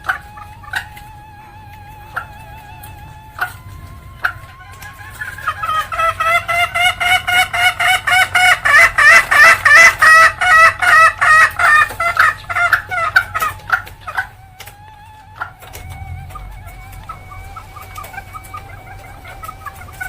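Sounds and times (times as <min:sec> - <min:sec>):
junglefowl hen cackling: 0:00.0 - 0:20.0.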